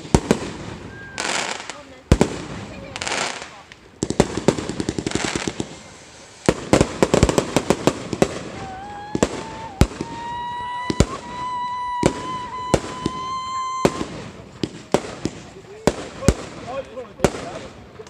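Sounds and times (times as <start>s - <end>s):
long firework whistle: 0.0s - 1.8s, 8.1s - 14.7s
fireworks crackling bangs: 0.0s - 18.0s
fireworks sharp bangs: 0.0s - 18.0s.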